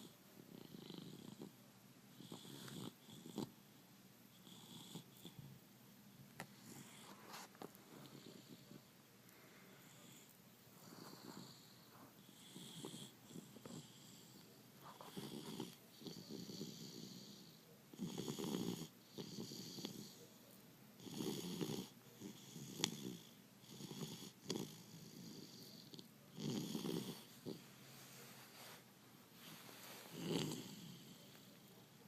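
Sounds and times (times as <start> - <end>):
dog snoring with rattle: 0.0 - 1.5, 2.1 - 3.5, 4.3 - 5.4, 9.8 - 20.2, 21.0 - 27.7, 30.1 - 31.7.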